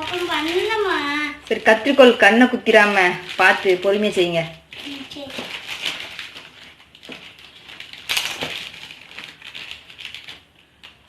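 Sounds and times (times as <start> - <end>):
packaging crinkling: 0.0 - 11.0
scissors cutting packaging: 4.7 - 11.0.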